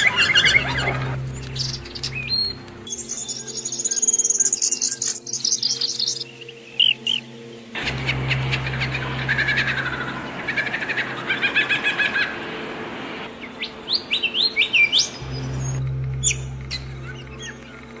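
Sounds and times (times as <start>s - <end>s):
songbirds chirping and trilling: 0.0s - 18.0s
low steady hum: 15.2s - 18.0s.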